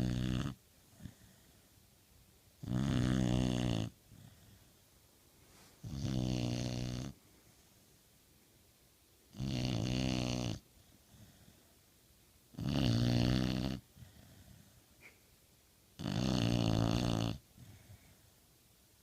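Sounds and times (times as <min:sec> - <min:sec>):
dog snoring: 0:00.0 - 0:01.6, 0:02.6 - 0:04.6, 0:05.8 - 0:07.2, 0:09.3 - 0:11.6, 0:12.5 - 0:14.8, 0:16.0 - 0:17.8.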